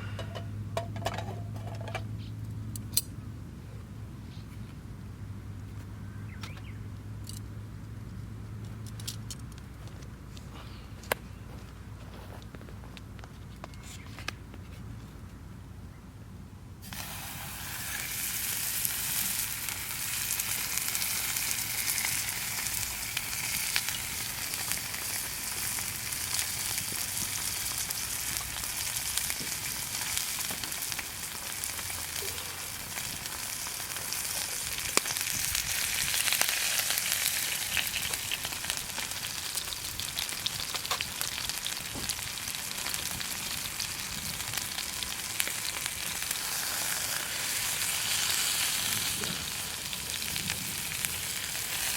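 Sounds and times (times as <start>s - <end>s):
steak sizzling in hot fat: 16.8s - 51.9s.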